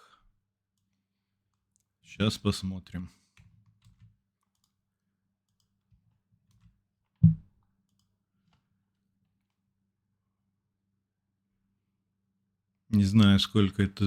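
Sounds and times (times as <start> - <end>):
low thump: 7.2 - 7.5.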